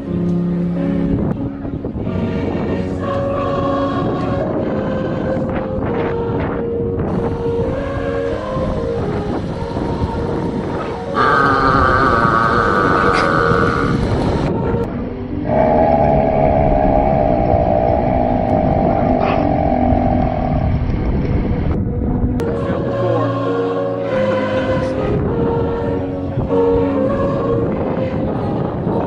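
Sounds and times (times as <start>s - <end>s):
steady low rumble: 0.4s - 23.2s
long loud burps: 11.1s - 14.4s.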